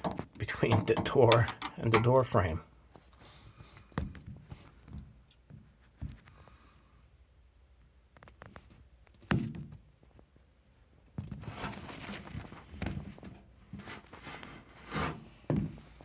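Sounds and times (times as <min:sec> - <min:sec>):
knocks: 0:00.0 - 0:02.1
rustling handling noise: 0:11.3 - 0:16.0.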